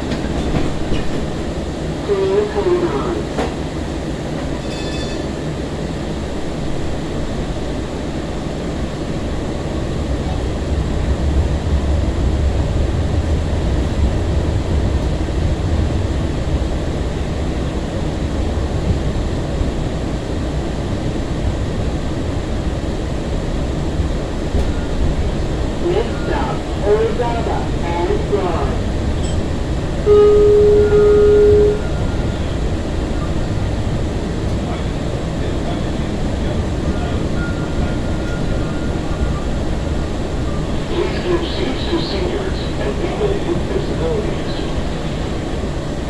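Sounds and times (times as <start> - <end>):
light-rail car rumble: 0.0 - 46.0
high ringing tone: 4.6 - 5.4, 29.2 - 32.6.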